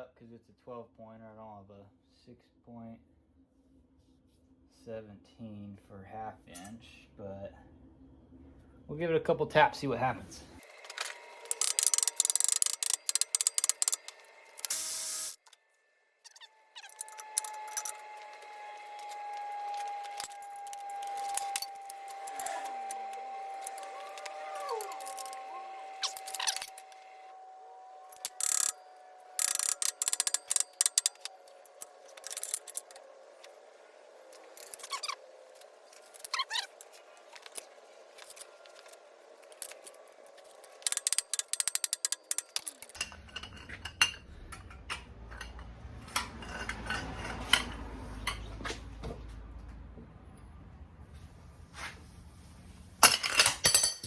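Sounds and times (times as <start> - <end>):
metallic clattering of tools: 10.8 - 15.0, 19.8 - 27.0, 29.4 - 33.1, 34.3 - 35.2, 35.9 - 48.5, 53.0 - 54.0.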